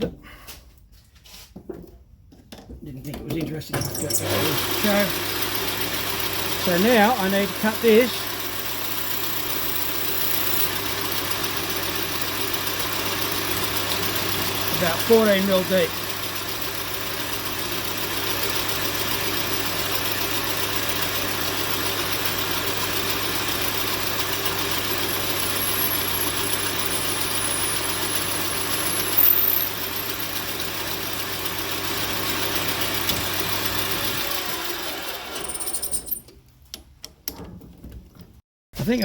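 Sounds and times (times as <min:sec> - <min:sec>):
drill bit boring metal: 0:03.8 - 0:36.2
lathe running: 0:03.8 - 0:36.2
motor running down: 0:04.0 - 0:17.6, 0:20.5 - 0:36.0.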